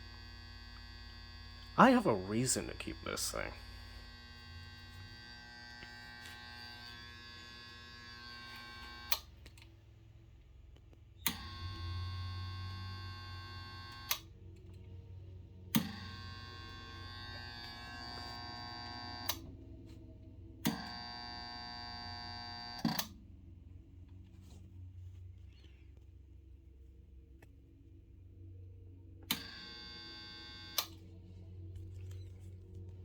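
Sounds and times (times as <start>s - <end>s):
harsh electrical buzz: 0.0s - 9.3s, 11.2s - 14.3s, 15.7s - 19.5s, 20.6s - 23.1s, 29.3s - 31.0s.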